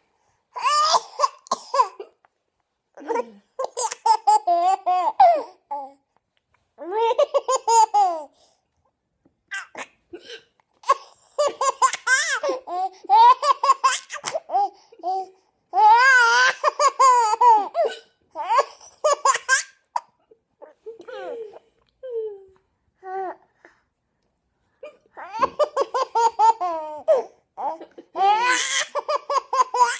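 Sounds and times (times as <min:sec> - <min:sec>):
baby laughing: 0:03.1 - 0:05.9, 0:06.8 - 0:08.3, 0:10.8 - 0:21.1, 0:25.2 - 0:29.9.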